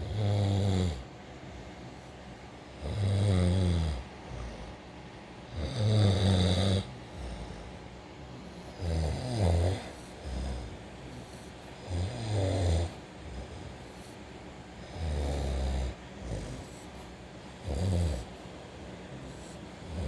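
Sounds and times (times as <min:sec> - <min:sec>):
person snoring: 0:00.0 - 0:01.0, 0:02.8 - 0:04.6, 0:05.5 - 0:07.7, 0:08.7 - 0:14.2, 0:14.8 - 0:16.9, 0:17.6 - 0:18.3, 0:19.2 - 0:20.0.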